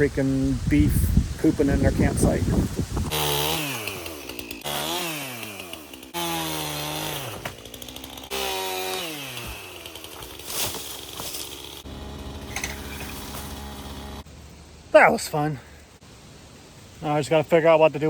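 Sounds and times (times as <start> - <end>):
chainsaw revving: 3.1 - 14.3.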